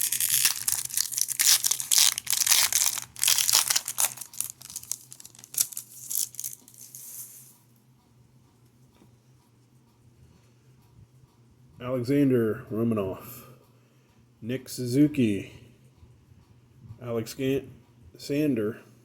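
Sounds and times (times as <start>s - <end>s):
wrapper tearing and crinkling: 0.0s - 7.4s.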